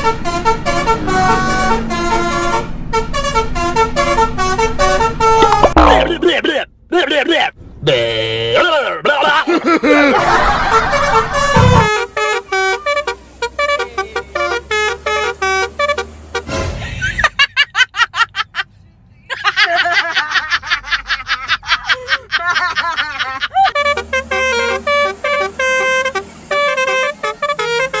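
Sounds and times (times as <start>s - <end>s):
bus horn playing melodic toots: 0.0s - 6.1s, 10.2s - 16.8s, 23.7s - 28.0s.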